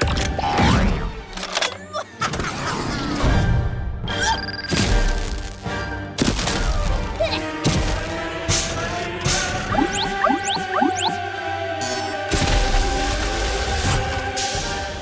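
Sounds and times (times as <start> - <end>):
cartoon action music: 9.3 - 11.3.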